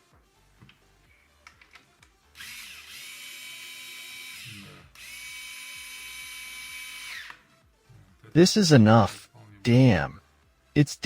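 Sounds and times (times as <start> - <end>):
electric screwdriver whine: 2.4 - 7.4.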